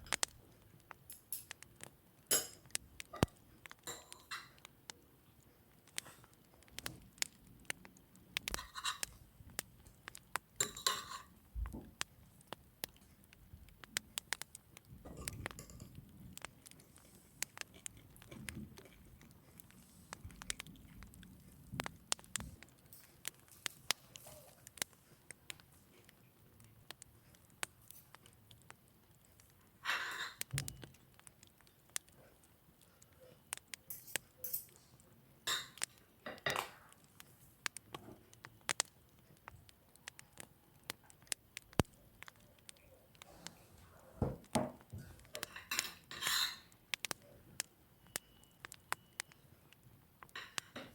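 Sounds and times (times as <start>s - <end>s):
cutlery and dishes clinking: 1.1s - 1.6s, 2.3s - 4.6s, 8.5s - 9.2s, 10.6s - 11.4s, 15.0s - 16.0s, 29.8s - 30.9s, 33.9s - 36.8s, 44.3s - 46.7s, 50.3s - 50.9s.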